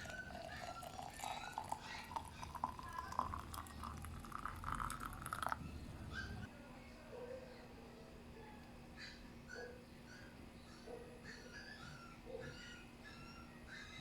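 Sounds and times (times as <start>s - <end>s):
water pouring into a glass jar: 0.0s - 5.7s.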